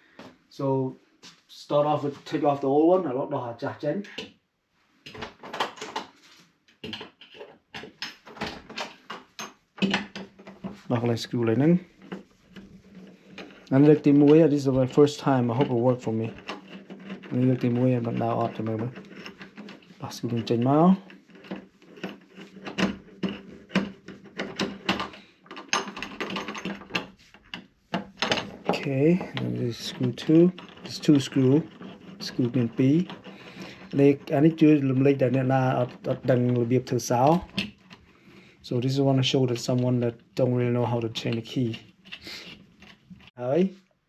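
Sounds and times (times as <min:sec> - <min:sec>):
screwdriver on metal lock: 0:12.1 - 0:34.3.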